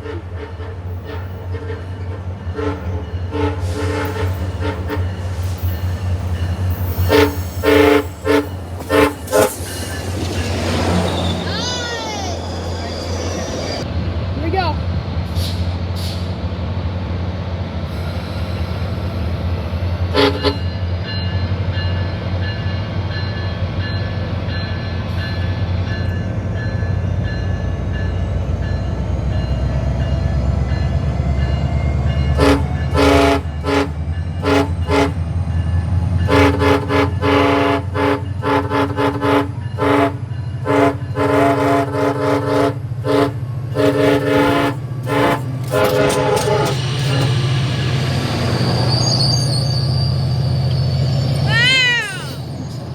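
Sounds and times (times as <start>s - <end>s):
train air horn: 0.0s - 5.8s, 6.9s - 9.6s, 20.0s - 20.7s, 32.3s - 35.3s, 36.2s - 47.3s.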